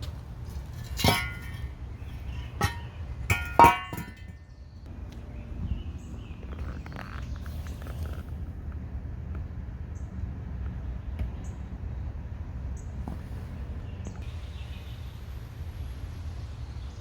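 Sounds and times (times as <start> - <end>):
metal tools clanging: 0.5 - 4.5.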